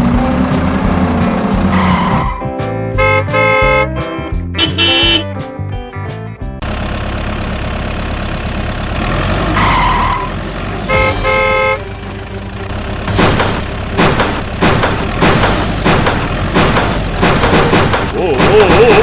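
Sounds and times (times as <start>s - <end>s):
vehicle engine running: 0.0s - 4.0s, 4.6s - 5.3s, 6.4s - 19.0s
vehicle horn beeping: 3.0s - 3.9s, 4.6s - 5.3s, 10.9s - 12.2s
sharp knocks: 13.0s - 19.0s.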